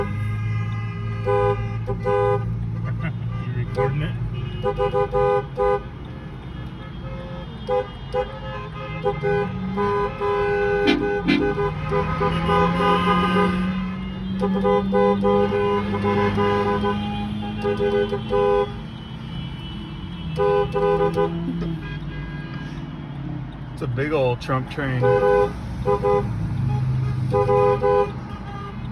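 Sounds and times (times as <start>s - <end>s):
car horns honking: 0.0s - 23.1s, 24.4s - 28.9s.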